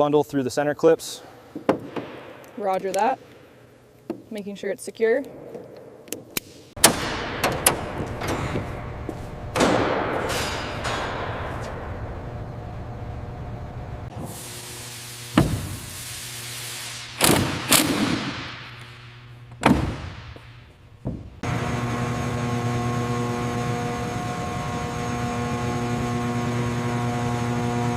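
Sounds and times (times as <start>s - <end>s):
sharp heavy impacts: 6.6s - 13.7s
steady machine hum: 6.8s - 27.9s.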